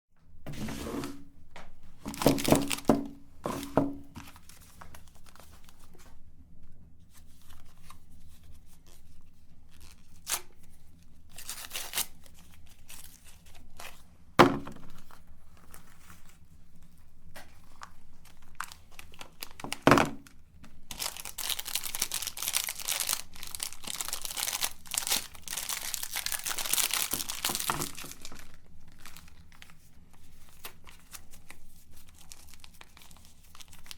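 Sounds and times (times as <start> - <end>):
wrapper crinkling and tearing: 2.0 - 6.0, 8.9 - 14.0, 17.4 - 33.9.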